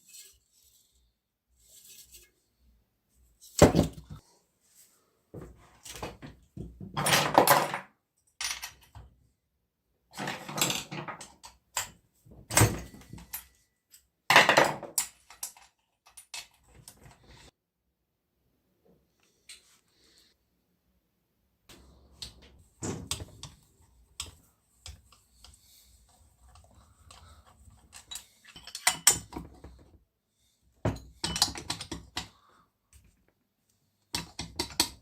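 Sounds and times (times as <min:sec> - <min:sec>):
metal tools clattering: 0:27.1 - 0:29.7, 0:30.9 - 0:32.1.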